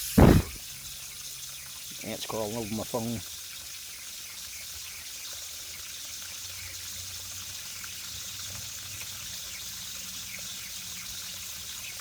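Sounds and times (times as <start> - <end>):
water running from valve: 0.0 - 12.0.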